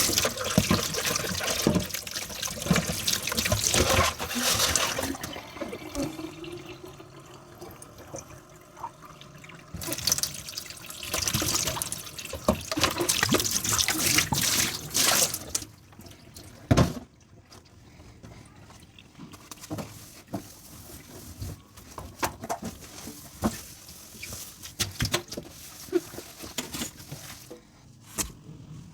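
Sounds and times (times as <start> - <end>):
tap water running into sink: 0.0 - 17.0.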